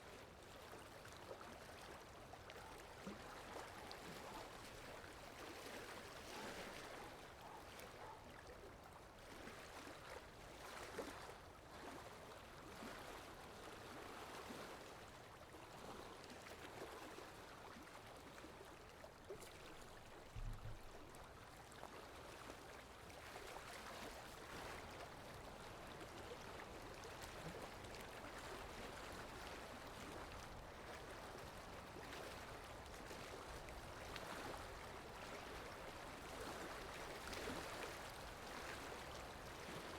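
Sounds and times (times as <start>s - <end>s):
small waves lapping: 0.0s - 39.9s
brief low thump: 20.4s - 20.8s.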